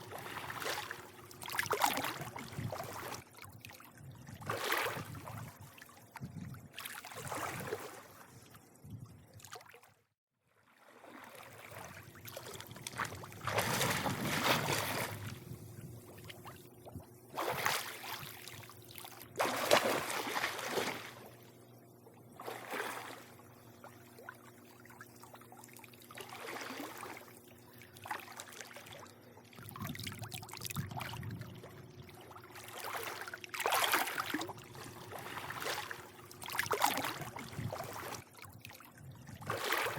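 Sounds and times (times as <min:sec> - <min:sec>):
pool water lapping and sloshing: 0:00.0 - 0:39.9
steady low hum: 0:11.6 - 0:39.9.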